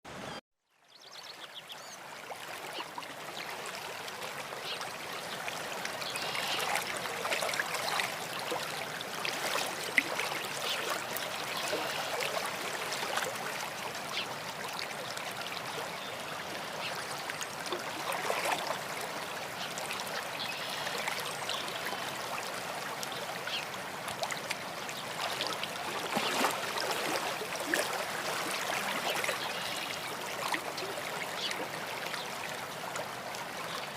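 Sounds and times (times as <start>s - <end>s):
stream trickling and gurgling: 0.2s - 33.9s
little water splashes: 2.2s - 15.0s, 17.2s - 19.2s, 22.9s - 32.4s.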